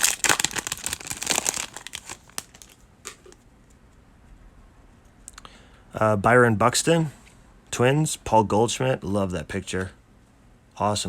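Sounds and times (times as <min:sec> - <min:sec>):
trading cards rustling: 0:00.0 - 0:03.4.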